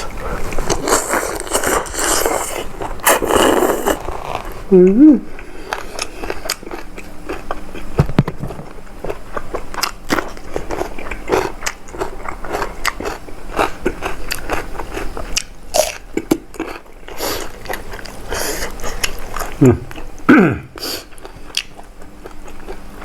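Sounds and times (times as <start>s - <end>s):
person chewing and crunching: 0.0s - 4.7s, 5.3s - 23.0s
wet smacking while eating: 21.1s - 22.8s.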